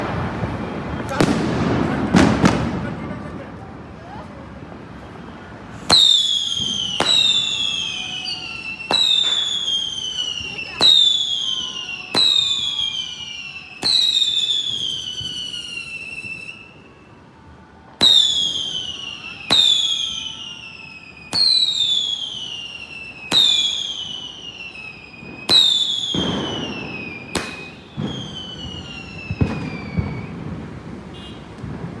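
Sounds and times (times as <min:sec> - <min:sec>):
firework cracks: 0:00.0 - 0:03.3, 0:05.8 - 0:16.6, 0:18.0 - 0:32.0
falling firework whistle: 0:05.8 - 0:17.2, 0:18.0 - 0:31.7.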